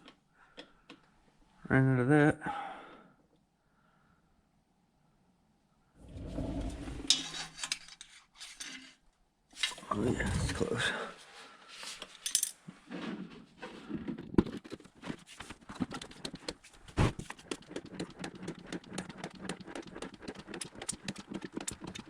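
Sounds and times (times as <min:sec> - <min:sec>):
rapid clicking and rattling: 0:14.5 - 0:22.0.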